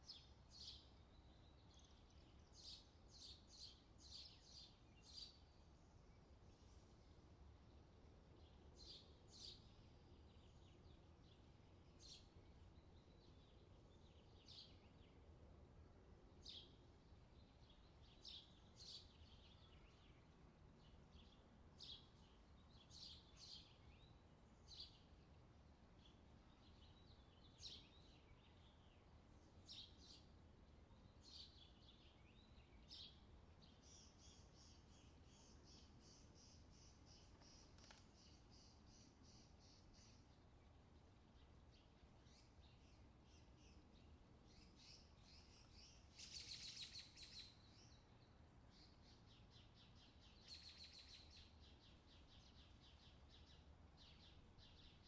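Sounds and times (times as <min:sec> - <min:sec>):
low steady background hum: 0:00.0 - 0:55.0.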